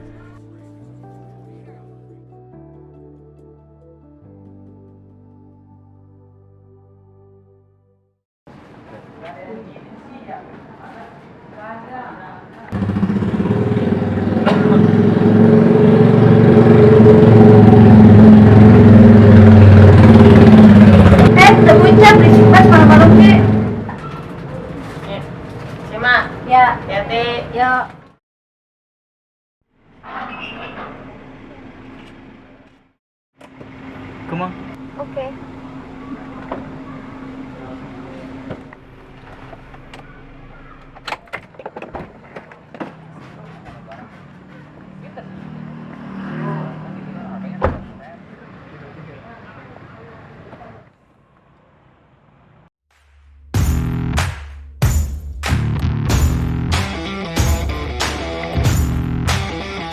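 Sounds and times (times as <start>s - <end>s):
motorcycle engine running: 12.8s - 24.0s, 56.1s - 59.9s.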